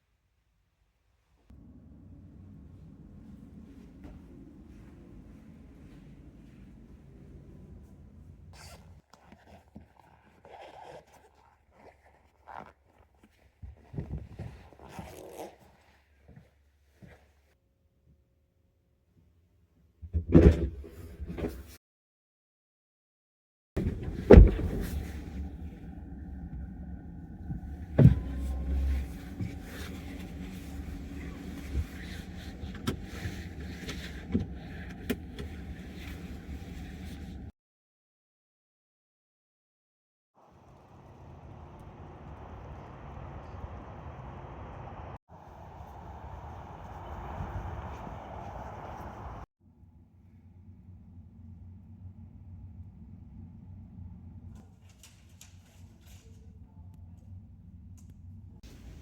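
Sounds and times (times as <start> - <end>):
low hum: 1.5 - 8.5, 23.8 - 37.5
steady low rumble: 1.6 - 8.5, 23.8 - 37.5
heavy thump: 27.9 - 29.6.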